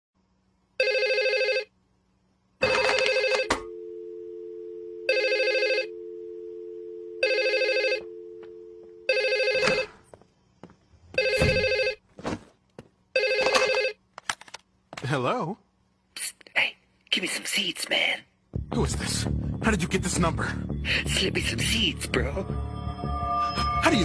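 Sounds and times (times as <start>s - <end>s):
telephone ringing: 0.8s - 1.7s, 2.6s - 10.0s, 11.2s - 12.0s, 13.2s - 14.0s.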